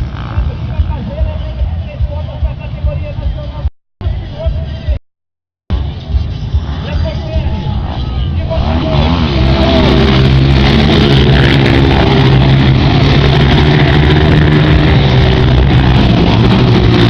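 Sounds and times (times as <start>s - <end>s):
dirt bike engine revving high: 8.3s - 17.0s.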